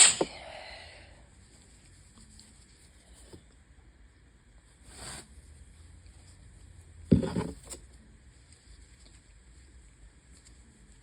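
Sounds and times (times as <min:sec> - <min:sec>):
person sharp breath: 0:00.0 - 0:01.3
faint steady hum: 0:00.0 - 0:11.0.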